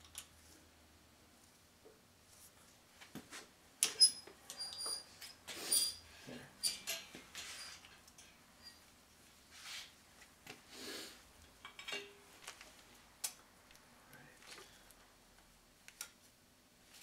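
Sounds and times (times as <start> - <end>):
metal tools clinking and scraping: 3.8 - 8.8, 11.6 - 12.2.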